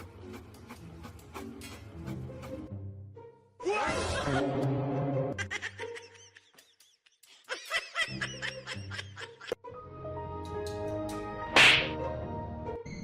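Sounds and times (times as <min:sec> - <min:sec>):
background music: 0:00.0 - 0:13.0
person laughing: 0:05.4 - 0:09.6.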